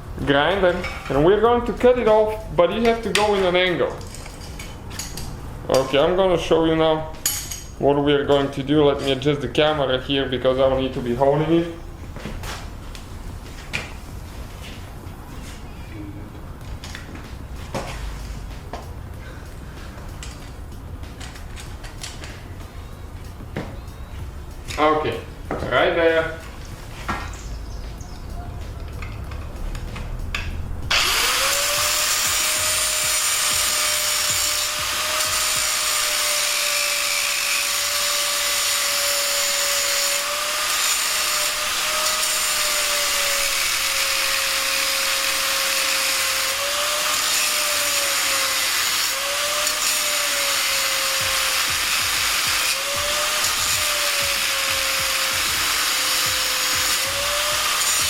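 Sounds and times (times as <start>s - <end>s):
metal grinding hiss: 28.9s - 58.0s
angle grinder motor: 30.8s - 58.0s.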